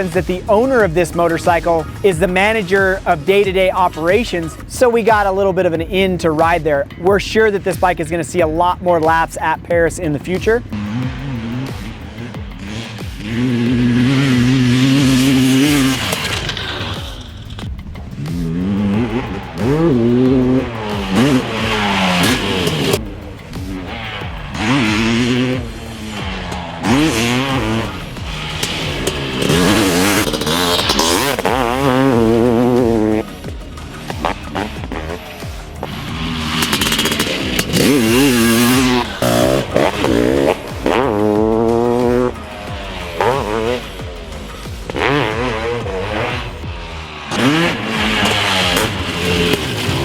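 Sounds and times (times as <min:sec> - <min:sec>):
dirt bike engine revving: 0:00.0 - 0:50.0.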